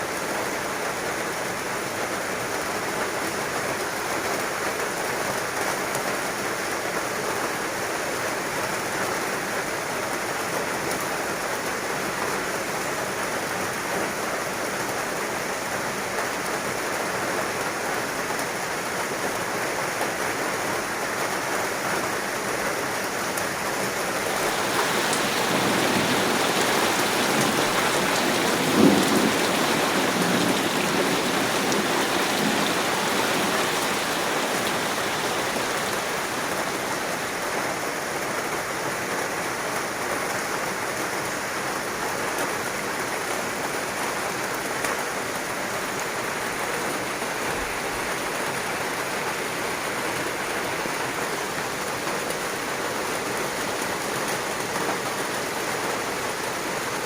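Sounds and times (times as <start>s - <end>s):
heavy rain: 23.8s - 38.3s
thunder rumble: 24.2s - 37.4s.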